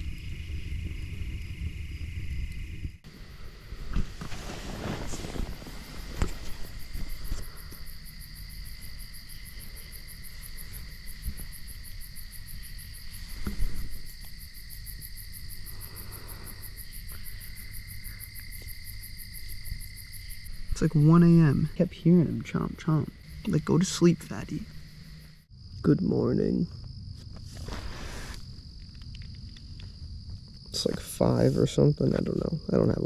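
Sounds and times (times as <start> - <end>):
crickets trilling: 0.0 - 33.0
short knocks or rustles: 13.3 - 14.0.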